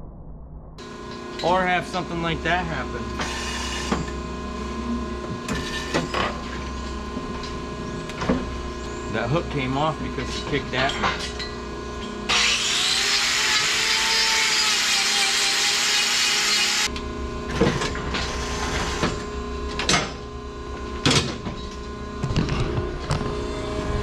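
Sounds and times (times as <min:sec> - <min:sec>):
power grinder on hoof: 0:02.9 - 0:04.2, 0:12.3 - 0:16.9, 0:18.1 - 0:19.2.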